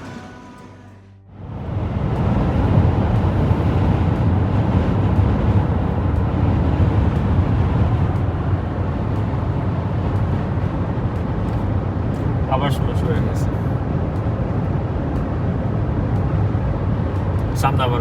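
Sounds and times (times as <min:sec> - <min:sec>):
road and wind noise in car: 0:01.2 - 0:18.0.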